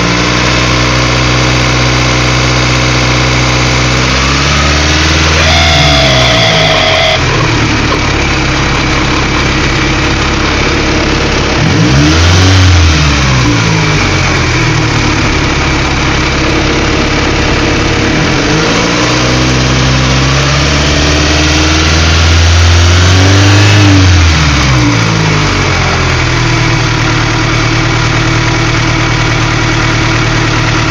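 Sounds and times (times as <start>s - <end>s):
car engine idling: 1.3s - 18.7s, 24.6s - 30.9s
short steady whine: 5.1s - 8.2s.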